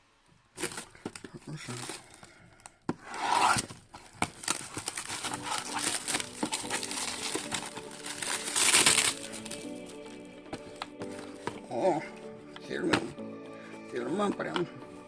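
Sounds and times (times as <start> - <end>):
packaging ripping: 0.5 - 11.7
packaging crinkling: 0.5 - 13.2.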